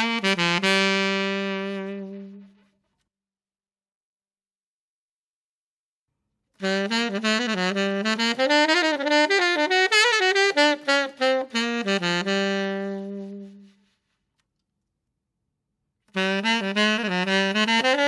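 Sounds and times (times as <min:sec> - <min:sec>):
saxophone jazz riff: 0:00.0 - 0:02.8, 0:06.6 - 0:13.9, 0:16.1 - 0:18.0.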